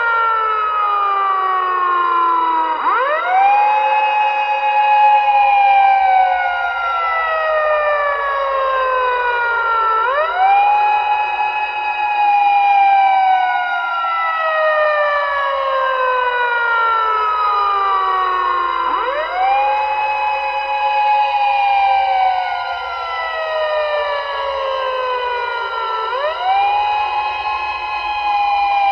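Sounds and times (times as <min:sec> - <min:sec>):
siren wailing: 0:00.0 - 0:28.9.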